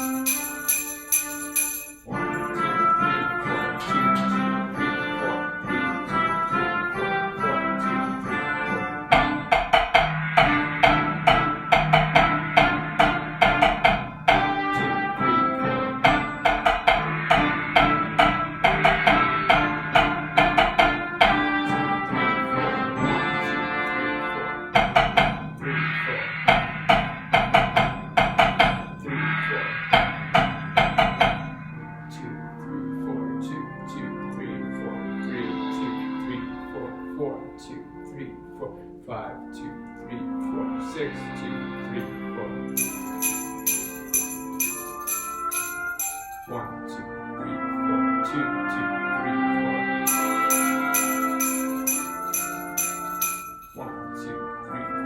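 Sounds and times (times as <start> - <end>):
sharp percussion strikes: 0.0 - 2.6, 9.1 - 14.5, 30.0 - 31.6, 42.8 - 46.6, 50.1 - 53.8
brass band music: 0.0 - 25.1, 39.6 - 55.0.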